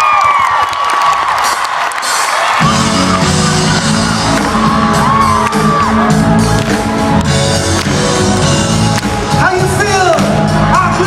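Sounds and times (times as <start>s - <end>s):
amplified band music: 2.0s - 11.0s
voices whooping and shouting: 2.4s - 6.5s.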